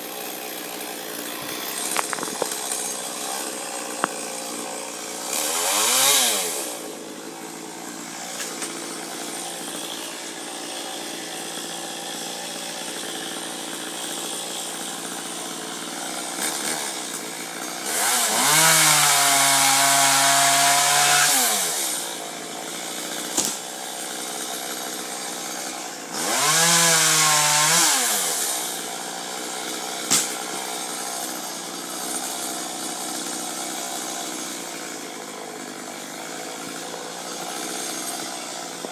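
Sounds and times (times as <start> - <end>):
chainsaw idling and revving: 0.0 - 38.9.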